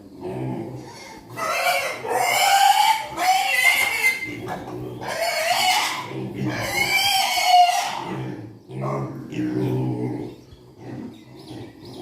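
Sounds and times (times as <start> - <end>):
piglets squealing: 0.8 - 8.3.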